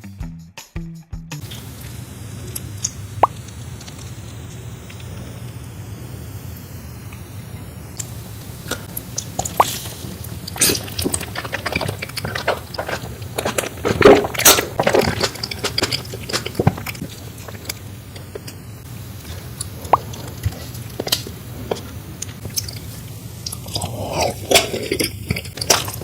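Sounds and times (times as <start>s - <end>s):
steady low hum: 1.4s - 26.0s
person chewing food: 8.0s - 18.5s, 19.6s - 26.0s.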